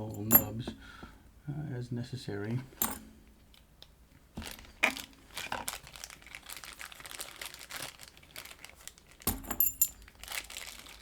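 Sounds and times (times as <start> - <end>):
metal lock parts clicking: 9.3 - 10.0.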